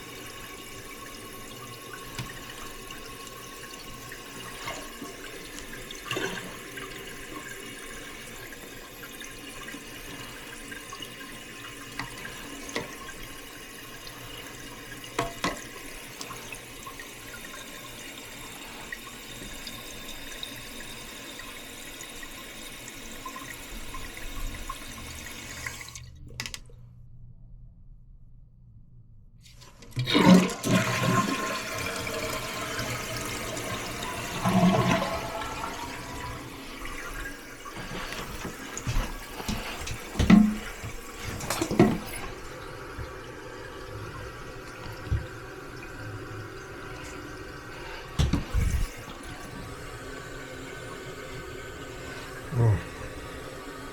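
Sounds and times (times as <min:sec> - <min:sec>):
water running into toilet tank: 0:00.0 - 0:26.6, 0:29.6 - 0:53.9.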